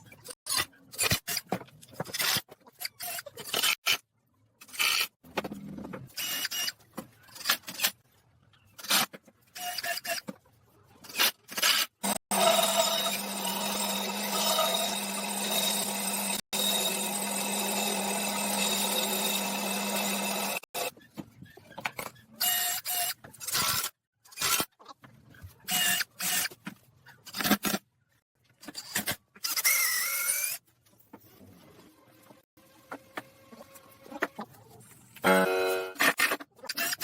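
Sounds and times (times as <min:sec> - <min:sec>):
workshop noises: 0:00.0 - 0:37.0
power tool running: 0:12.0 - 0:20.9.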